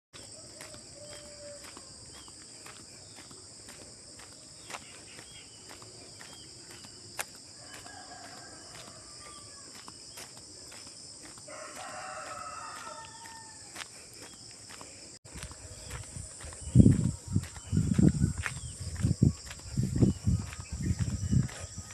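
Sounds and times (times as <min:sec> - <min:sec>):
insects droning: 0:00.2 - 0:21.9
rooster crowing: 0:00.3 - 0:02.0, 0:07.5 - 0:09.8, 0:11.4 - 0:13.8.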